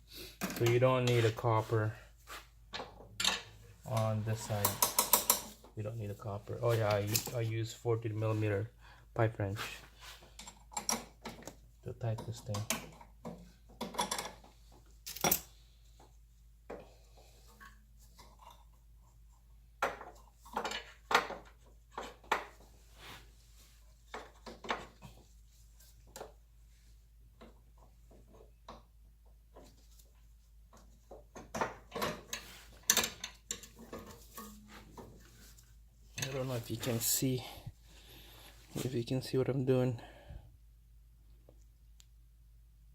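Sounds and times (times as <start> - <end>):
metallic clicks of wrench and fittings: 4.6 - 5.6.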